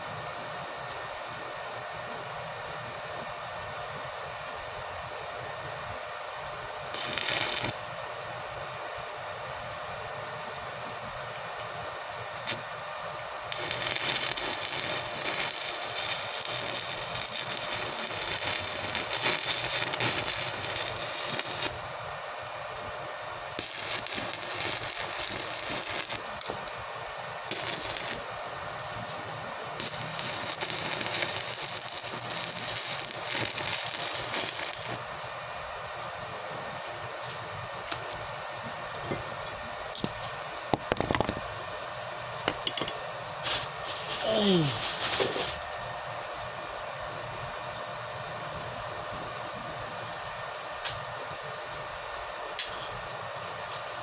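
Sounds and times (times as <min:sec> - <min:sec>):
electric arc welding: 0:07.0 - 0:08.1, 0:13.5 - 0:22.0, 0:23.5 - 0:26.7, 0:27.5 - 0:28.6, 0:29.8 - 0:35.4, 0:43.4 - 0:45.7.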